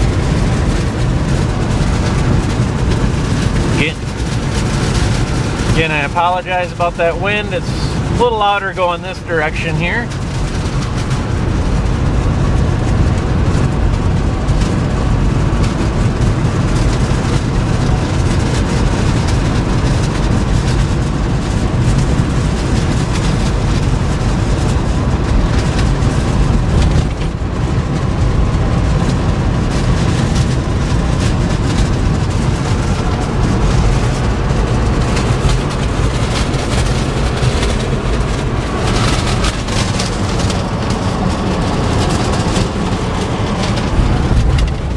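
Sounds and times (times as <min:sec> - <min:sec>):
diesel pickup truck driving: 0:00.0 - 0:44.9
road noise: 0:00.0 - 0:44.9
wind buffeting microphone: 0:00.0 - 0:44.9.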